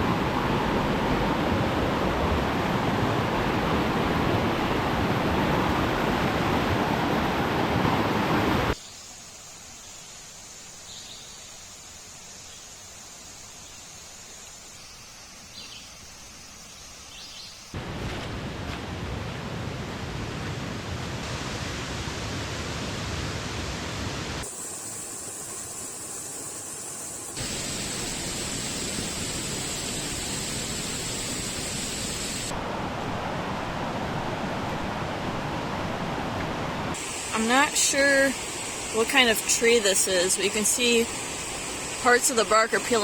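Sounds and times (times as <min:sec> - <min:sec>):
mountain creek rushing: 0:00.0 - 0:08.8, 0:17.8 - 0:43.0
steady high hiss: 0:08.7 - 0:17.8, 0:24.3 - 0:32.6, 0:36.9 - 0:43.0.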